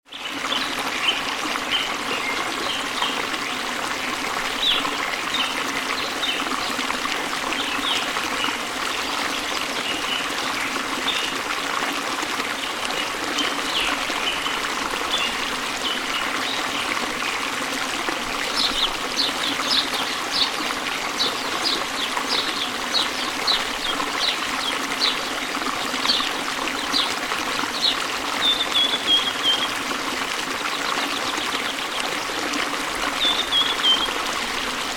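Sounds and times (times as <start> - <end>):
small birds chirping: 33.2 - 34.2.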